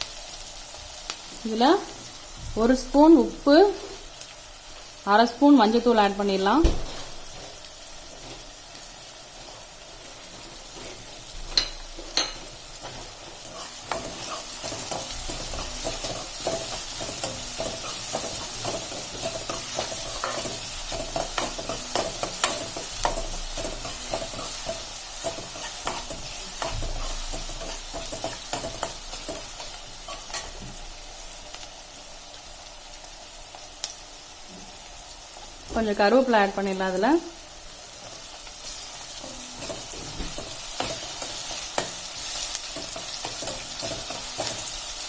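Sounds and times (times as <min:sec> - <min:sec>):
onions sizzling in hot oil: 0:00.0 - 0:45.0
spatula scraping a pan: 0:09.4 - 0:30.8.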